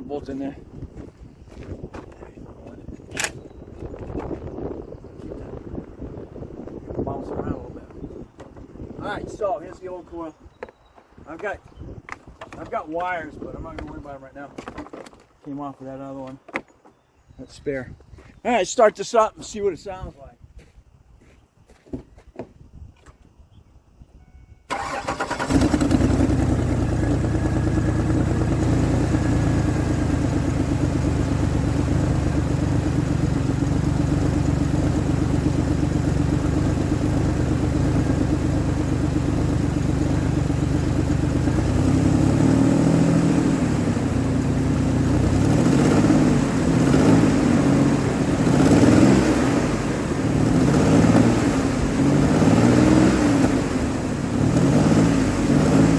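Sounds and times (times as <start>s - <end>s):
car engine cranking and starting: 24.7s - 44.1s
car engine idling and revving: 24.7s - 55.9s.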